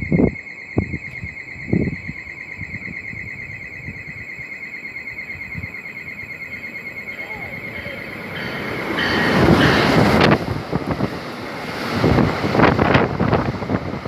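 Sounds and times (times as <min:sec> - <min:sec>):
wind buffeting microphone: 0:00.0 - 0:04.4, 0:07.2 - 0:14.0.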